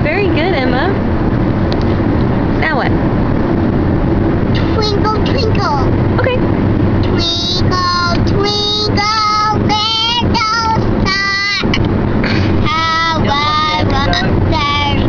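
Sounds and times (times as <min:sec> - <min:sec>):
girl singing in high voice: 0:07.0 - 0:11.8, 0:12.6 - 0:15.0.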